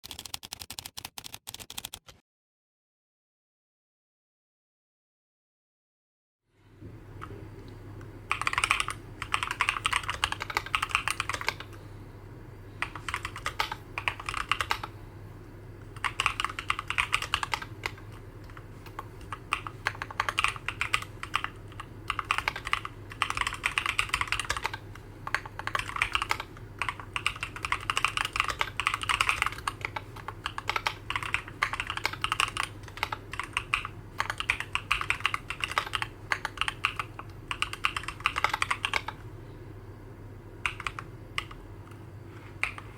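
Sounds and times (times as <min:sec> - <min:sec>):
typing on mechanical keyboard: 0:00.0 - 0:02.2, 0:08.3 - 0:11.8, 0:12.8 - 0:14.9, 0:16.0 - 0:39.2, 0:40.6 - 0:42.0, 0:42.6 - 0:42.9.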